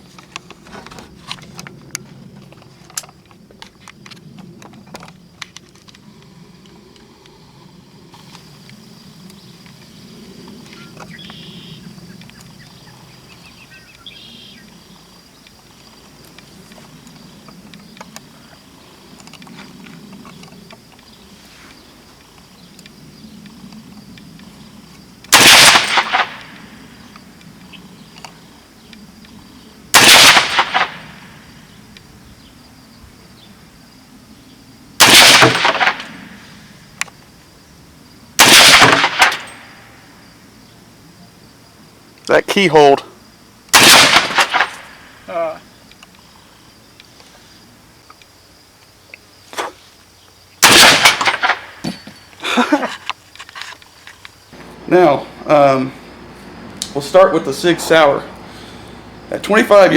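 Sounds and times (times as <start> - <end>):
rifle shots with echo: 25.3 - 26.6, 30.0 - 31.3, 35.0 - 36.3, 38.4 - 39.8, 43.7 - 45.1, 50.6 - 51.8.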